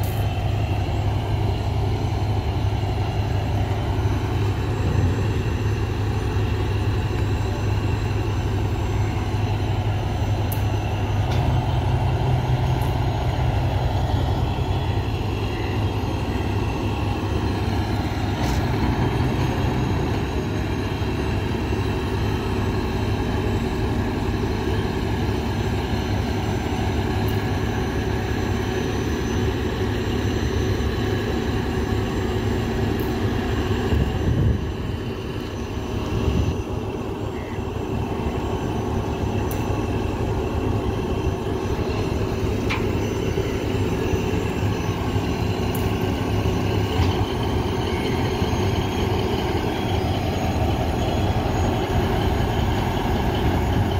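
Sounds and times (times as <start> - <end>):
heavy vehicle engine rumbling: 0.0 - 53.9.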